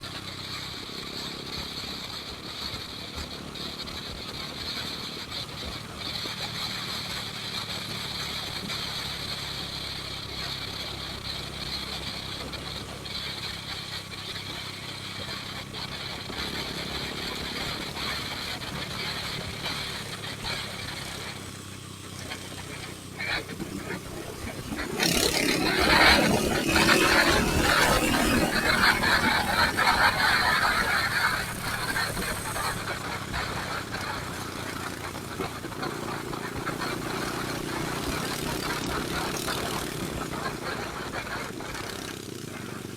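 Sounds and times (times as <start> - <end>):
vehicle engine running: 0.0 - 42.9
high-pitched buzz: 23.5 - 32.9.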